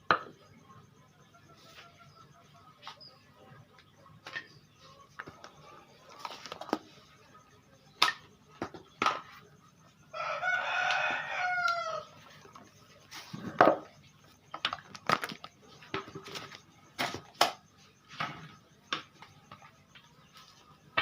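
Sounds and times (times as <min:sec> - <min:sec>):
rooster crowing: 0:10.1 - 0:12.4.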